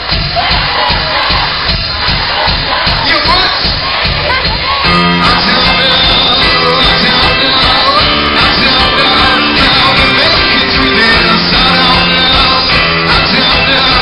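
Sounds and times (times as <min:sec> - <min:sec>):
live pop-rock band playing: 0:03.5 - 0:14.0
person singing: 0:04.2 - 0:14.0.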